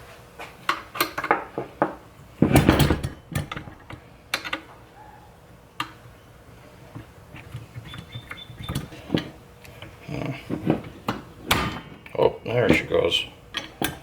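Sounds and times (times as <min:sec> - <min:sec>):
steering column metal clicks: 0:03.3 - 0:04.7.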